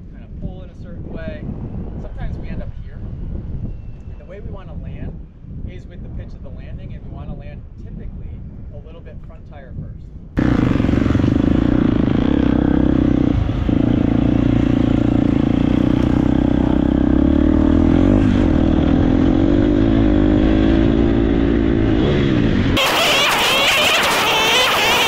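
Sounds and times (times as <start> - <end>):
dirt bike engine running hard: 10.4 - 25.0.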